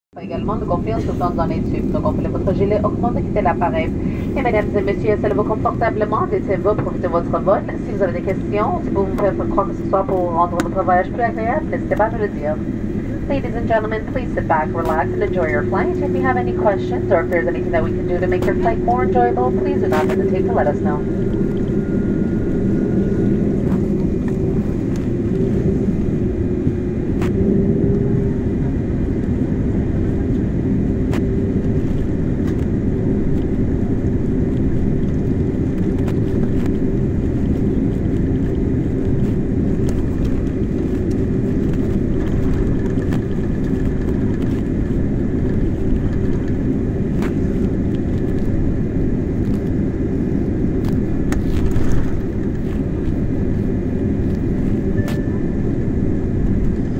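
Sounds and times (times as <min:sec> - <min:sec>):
faint steady tones: 0:00.1 - 0:30.3
jet engines rumbling at idle: 0:00.1 - 0:56.9.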